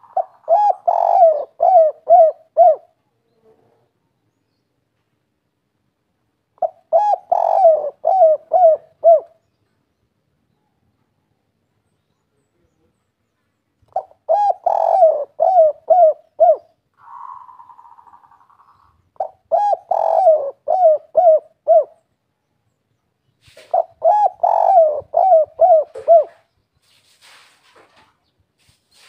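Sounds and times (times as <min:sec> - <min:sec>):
dove cooing: 0:00.0 - 0:03.9, 0:06.6 - 0:09.4, 0:13.9 - 0:22.1, 0:23.5 - 0:26.5.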